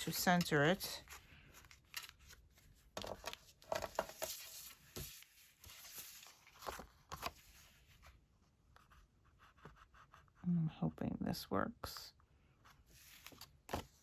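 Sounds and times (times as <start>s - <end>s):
paper and tape rustling: 0.0s - 8.0s.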